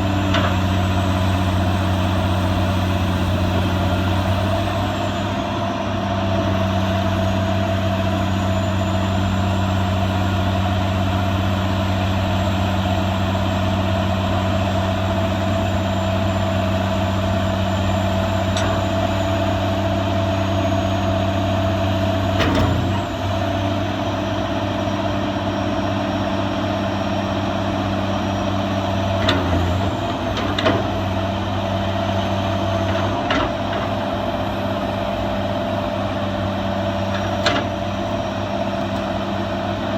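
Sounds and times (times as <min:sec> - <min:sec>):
excavator diesel engine running: 0:00.0 - 0:39.9.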